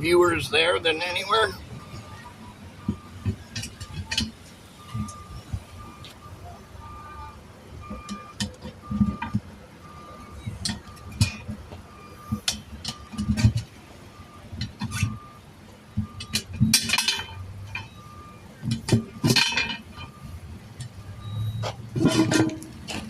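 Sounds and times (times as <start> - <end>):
vehicle reversing beeper: 0.0 - 23.0
metal tools clinking: 16.2 - 17.9, 18.9 - 20.2
metal scraping: 21.4 - 23.0.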